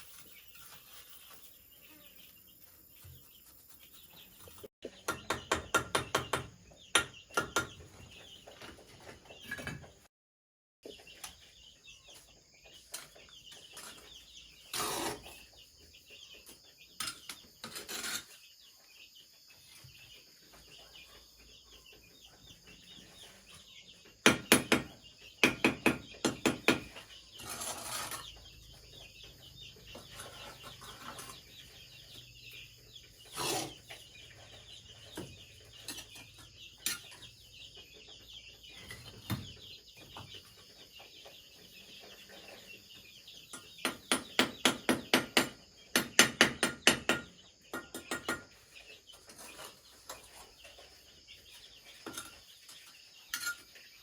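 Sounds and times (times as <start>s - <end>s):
tool knocking on bamboo: 5.0s - 7.8s, 24.2s - 27.0s, 43.8s - 48.5s
chickens clucking: 6.3s - 10.1s, 10.8s - 24.2s, 26.0s - 44.6s, 47.3s - 54.0s.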